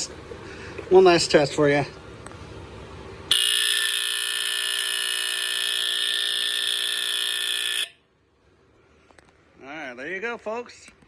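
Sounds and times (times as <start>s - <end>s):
smoke alarm high-pitched tone: 3.3s - 8.0s.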